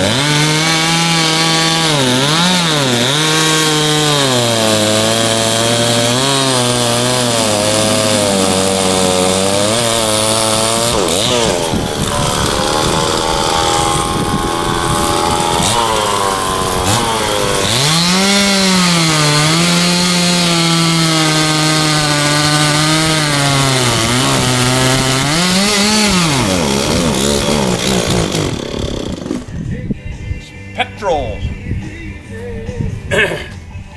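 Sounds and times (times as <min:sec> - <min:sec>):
chainsaw revving: 0:00.0 - 0:29.5.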